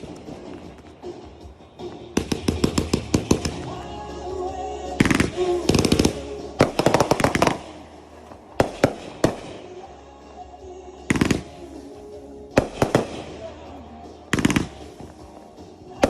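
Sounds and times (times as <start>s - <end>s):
fireworks crackling bangs: 0.0s - 4.0s, 5.0s - 9.9s, 12.5s - 13.6s.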